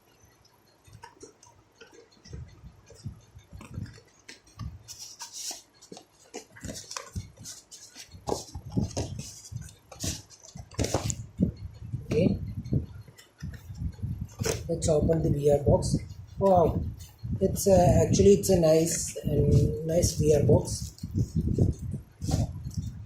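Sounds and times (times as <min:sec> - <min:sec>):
packaging rustling and crinkling: 0:03.8 - 0:11.2.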